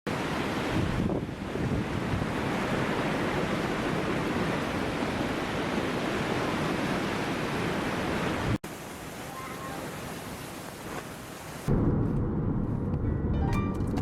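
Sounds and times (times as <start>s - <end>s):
strong wind blowing: 0.2s - 8.6s
wind rumble on microphone: 0.2s - 8.6s, 11.7s - 14.0s.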